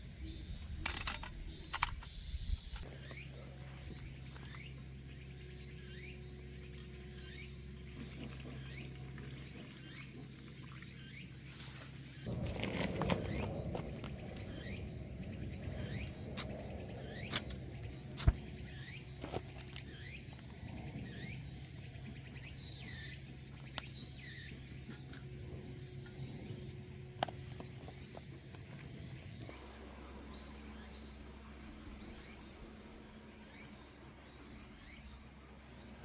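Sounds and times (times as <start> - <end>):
campfire crackling and popping: 12.2 - 20.5.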